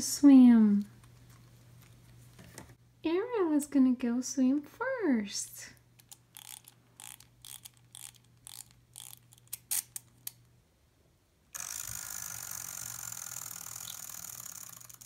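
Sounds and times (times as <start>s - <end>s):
ratchet clicks of winding toy: 6.0s - 10.4s, 11.6s - 15.0s
spring motor whirring: 6.1s - 10.0s, 11.6s - 15.0s.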